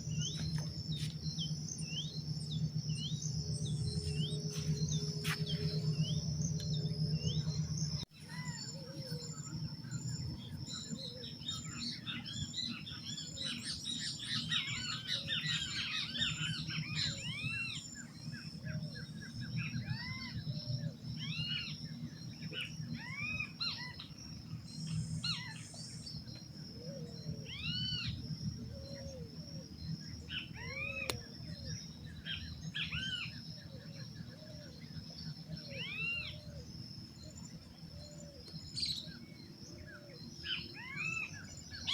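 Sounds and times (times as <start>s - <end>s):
low rumble: 0.0s - 8.1s
birds chirping and calling: 0.0s - 41.9s
high-pitched hum: 0.0s - 41.9s.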